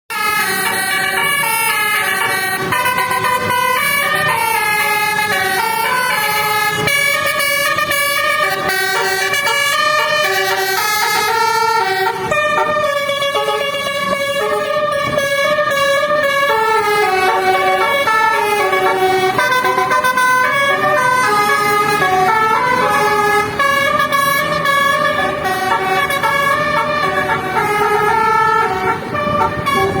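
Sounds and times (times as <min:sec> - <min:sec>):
bus horn playing a tune: 0:00.1 - 0:30.0.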